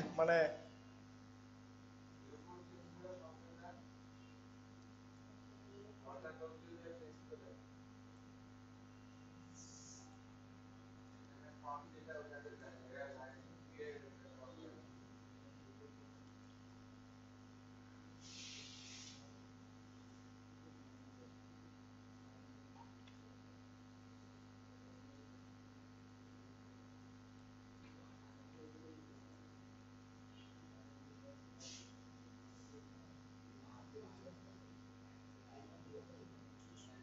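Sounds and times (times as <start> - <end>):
steady electrical hum: 0.0 - 37.0
brief hiss: 18.2 - 19.4, 31.6 - 32.0.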